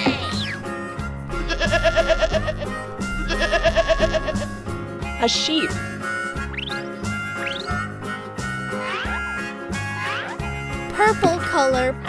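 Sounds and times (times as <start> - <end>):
children's music: 0.0 - 12.0
falling swoop sound effect: 1.3 - 6.0.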